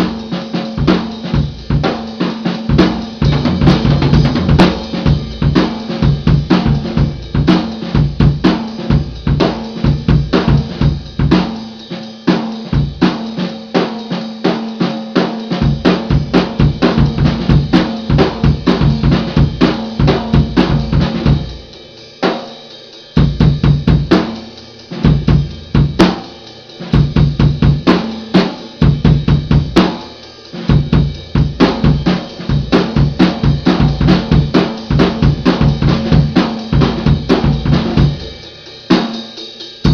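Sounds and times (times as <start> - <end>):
drum kit playing: 0.0 - 39.9.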